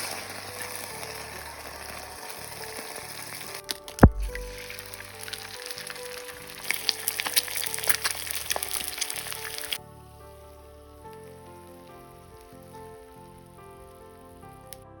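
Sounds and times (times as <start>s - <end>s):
food sizzling in hot oil: 0.0s - 9.8s
background music: 0.0s - 15.0s.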